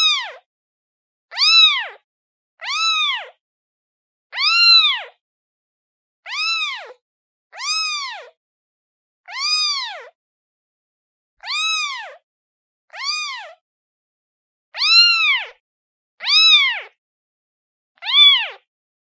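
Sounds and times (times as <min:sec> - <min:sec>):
kitten meowing: 0:00.0 - 0:00.4, 0:01.3 - 0:02.0, 0:02.6 - 0:03.4, 0:04.4 - 0:05.2, 0:06.3 - 0:08.4, 0:09.3 - 0:10.2, 0:11.4 - 0:12.2, 0:13.0 - 0:13.6, 0:14.8 - 0:15.6, 0:16.2 - 0:17.0, 0:18.0 - 0:18.6.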